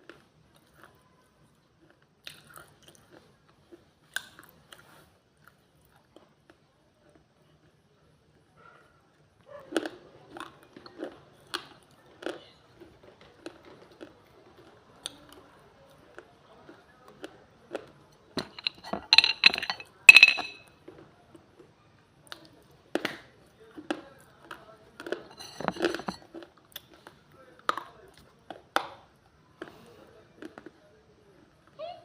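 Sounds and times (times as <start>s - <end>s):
clay being chewed crunching: 23.8s - 29.0s.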